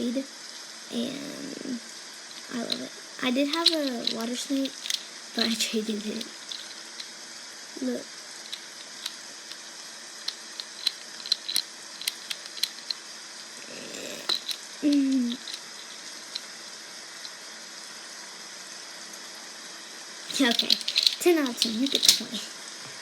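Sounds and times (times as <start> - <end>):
rain sounds from speaker: 0.0 - 6.5
fidget toy clicks and taps: 3.5 - 5.6, 6.2 - 7.1, 10.2 - 13.0, 14.2 - 16.4, 20.3 - 22.4.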